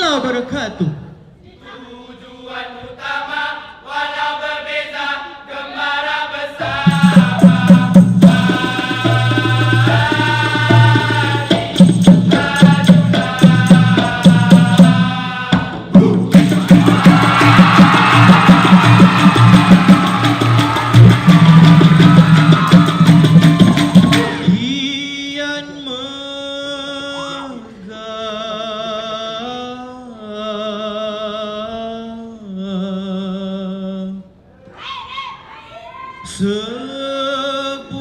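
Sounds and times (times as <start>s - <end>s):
percussion ensemble drumming: 6.6s - 24.9s
man singing unaccompanied: 6.6s - 34.3s, 36.3s - 38.0s.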